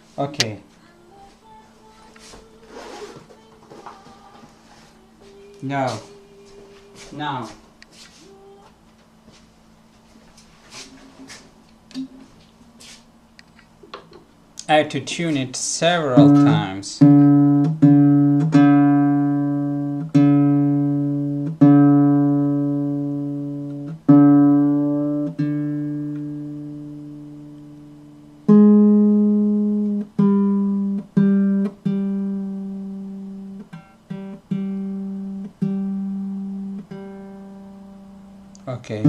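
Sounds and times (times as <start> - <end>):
ukulele strings plucked: 16.2 - 26.8.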